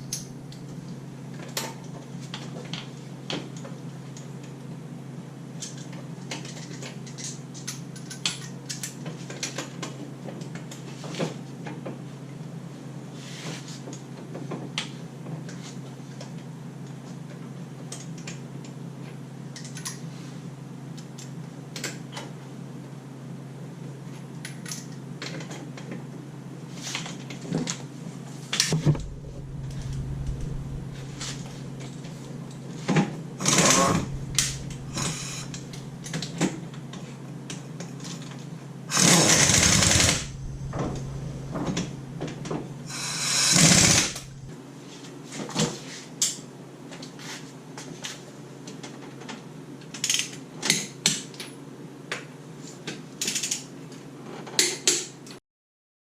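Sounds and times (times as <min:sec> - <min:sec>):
low hum: 0:00.0 - 0:01.3, 0:28.7 - 0:36.9, 0:39.2 - 0:44.5.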